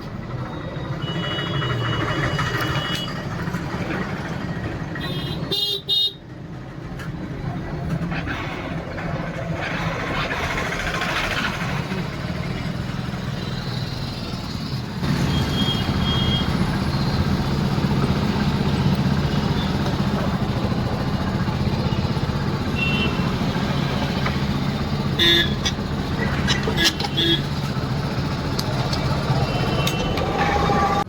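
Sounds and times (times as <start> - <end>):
motorcycle engine running: 10.2 - 30.4.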